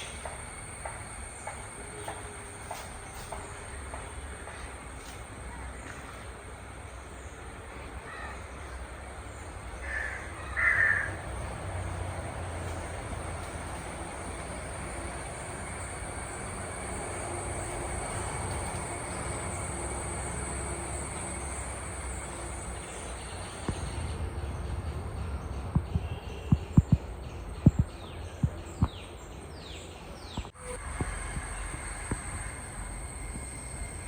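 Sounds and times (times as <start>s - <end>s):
steady noisy hiss: 0.0s - 34.0s
birds chirping: 14.2s - 30.6s
thin high-pitched whine: 30.6s - 34.0s.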